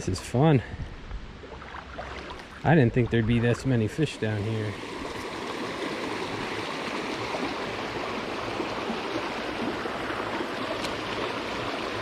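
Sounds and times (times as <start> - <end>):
stream flowing: 1.3 - 12.0.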